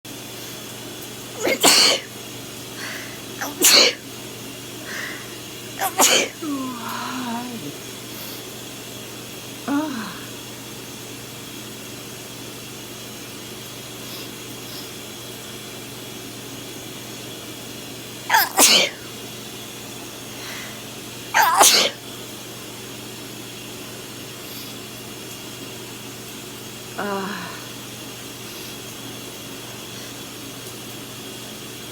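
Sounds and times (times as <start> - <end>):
steady background hum: 0.1 - 31.9
person sneezing: 1.4 - 2.1, 2.8 - 4.0, 4.9 - 7.8, 18.3 - 19.0, 21.4 - 22.0
brief vocal sound: 5.8 - 7.8.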